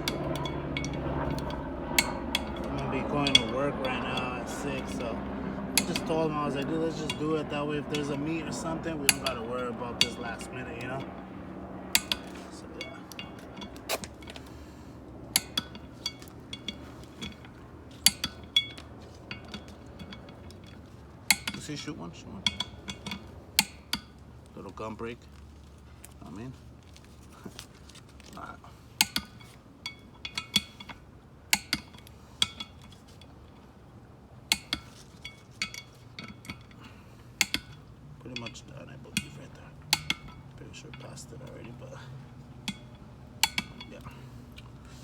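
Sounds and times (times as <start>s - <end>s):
metal tools clinking: 0.0s - 45.0s
wrench metallic clicks: 11.9s - 14.5s.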